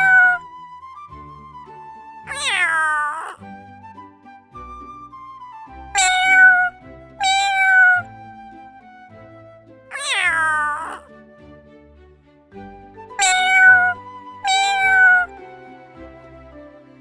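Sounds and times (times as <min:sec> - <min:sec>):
cat meowing: 0:00.0 - 0:00.4, 0:02.3 - 0:03.4, 0:05.9 - 0:08.1, 0:09.9 - 0:11.1, 0:13.2 - 0:15.4
soft background music: 0:00.0 - 0:17.0.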